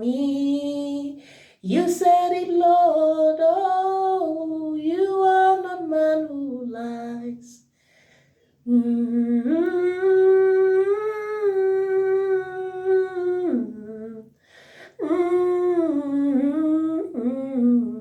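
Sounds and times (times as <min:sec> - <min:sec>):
person humming a melody: 0:08.7 - 0:14.3, 0:15.0 - 0:18.0.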